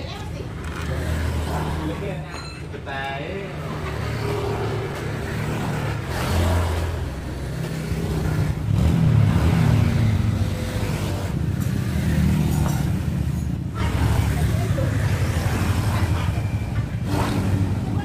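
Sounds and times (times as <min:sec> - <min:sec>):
vehicle engine revving: 0:03.8 - 0:18.0.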